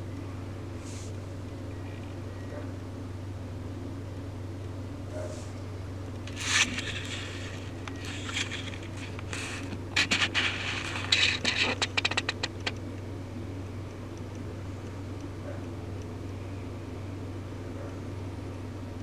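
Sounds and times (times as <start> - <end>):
steady low hum: 0.0 - 19.0
paintbrush strokes scraping: 6.3 - 12.4.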